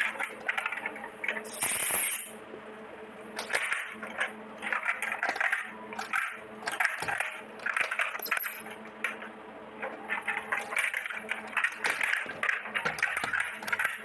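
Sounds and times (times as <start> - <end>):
toy kitchenware clinking: 5.3 - 8.7.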